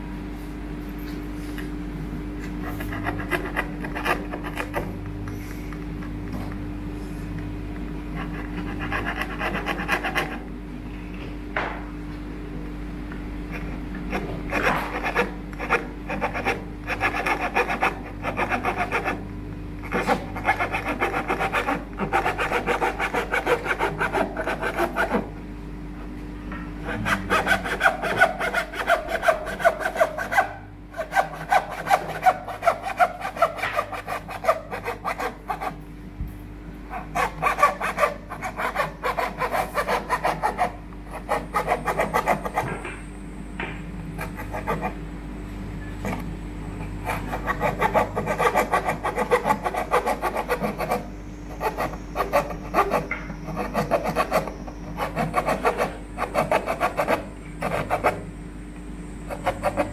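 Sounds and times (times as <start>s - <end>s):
hand saw cutting wood: 19.9s - 25.3s, 26.8s - 35.7s, 51.6s - 58.2s.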